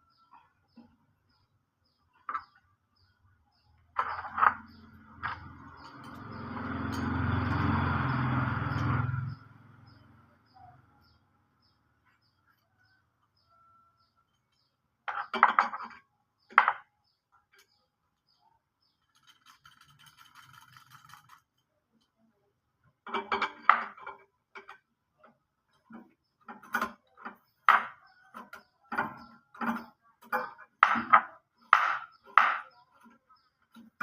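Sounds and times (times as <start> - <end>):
metallic clinks and knocks: 4.0 - 9.3.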